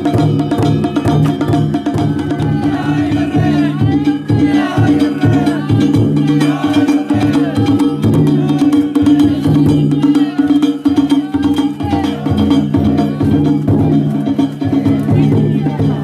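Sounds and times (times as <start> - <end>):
taiko drums beating: 0.0 - 16.0
gliding melody or voices: 1.8 - 16.0.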